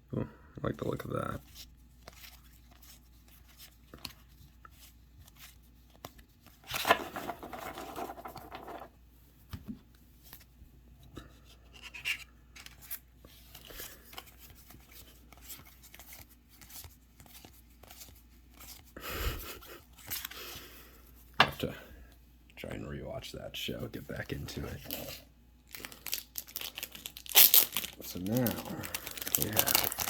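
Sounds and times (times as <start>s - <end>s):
cards and plastic packaging rustling: 1.1s - 8.9s, 11.4s - 19.0s, 24.1s - 30.0s
plastic packaging tearing: 25.7s - 30.0s.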